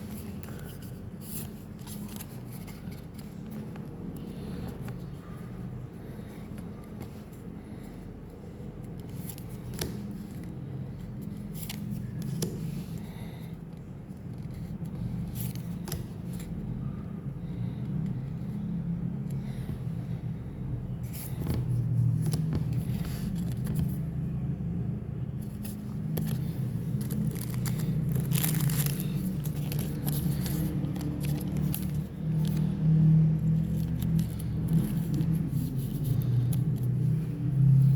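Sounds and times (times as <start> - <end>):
cards and wrappers rustling: 0.0 - 5.2, 25.4 - 37.8
steady low rumble: 16.6 - 37.9
wrappers being torn: 27.0 - 32.6.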